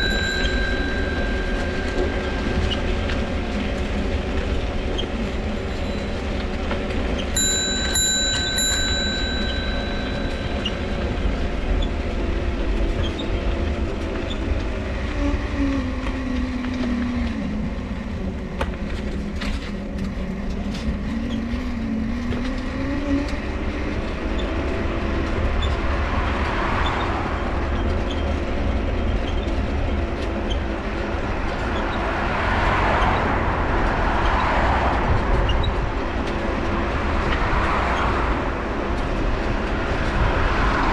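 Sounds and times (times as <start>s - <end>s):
squeaky bicycle crank: 0.0s - 16.0s, 20.6s - 25.9s, 26.5s - 30.8s
bicycle dynamo whining: 0.0s - 38.2s
bicycle rolling rumble: 0.0s - 40.9s.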